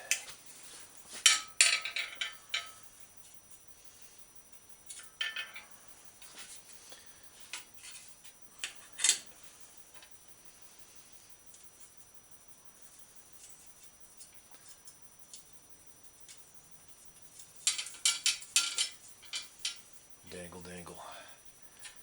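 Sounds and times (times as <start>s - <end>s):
metal clinks and clanks: 1.1s - 2.9s, 4.9s - 5.8s, 17.6s - 19.8s.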